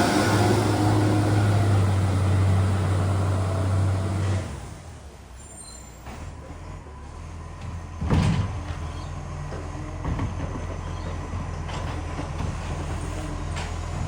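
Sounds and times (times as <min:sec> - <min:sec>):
diesel engine rumbling: 0:00.0 - 0:14.0.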